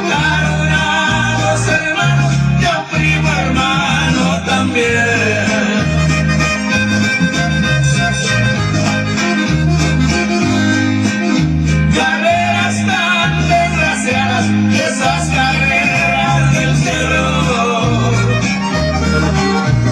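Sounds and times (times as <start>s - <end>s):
bouncing bass: 0.0s - 19.9s
guitar: 0.0s - 19.9s
string and reed melody: 4.4s - 12.0s, 16.4s - 19.9s.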